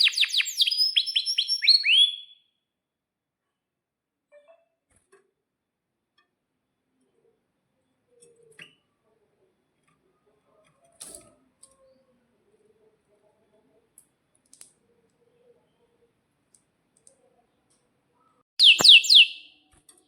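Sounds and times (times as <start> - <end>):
soft clicks and ticks: 13.9 - 15.2, 16.4 - 17.9.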